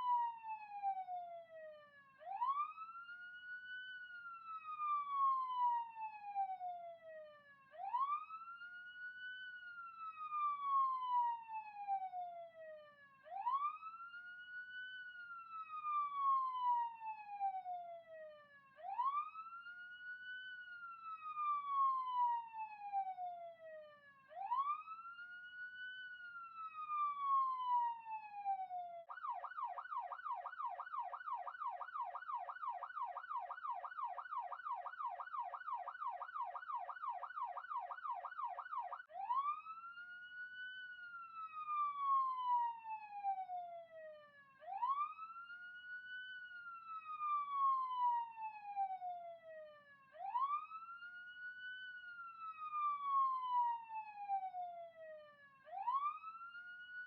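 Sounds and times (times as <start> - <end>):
police siren wailing and yelping: 24.4 - 43.8, 44.6 - 49.1, 50.2 - 57.0.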